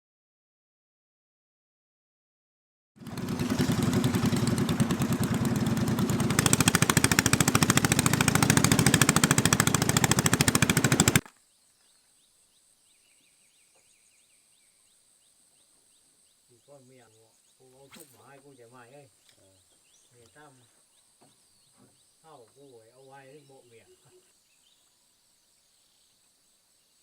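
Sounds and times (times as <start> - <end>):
small engine puttering: 3.0 - 11.2, 17.9 - 18.2
insects chirping: 11.3 - 27.0.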